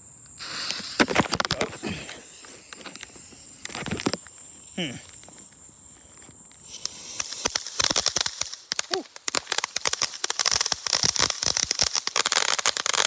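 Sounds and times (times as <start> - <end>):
firework crackling pops: 0.0 - 13.0
firework fuse hissing: 0.0 - 13.0.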